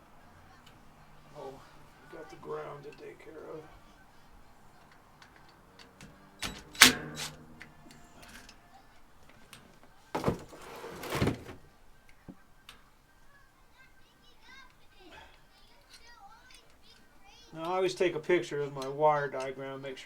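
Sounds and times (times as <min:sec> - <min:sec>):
clicks and knocks of tools and metal: 0:04.7 - 0:08.6
scraping rustle: 0:09.2 - 0:11.8.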